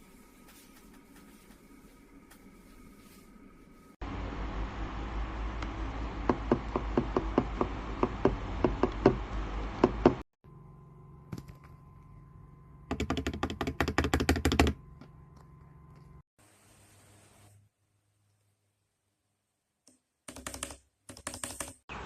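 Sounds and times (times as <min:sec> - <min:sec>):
low hum: 0:10.4 - 0:12.9.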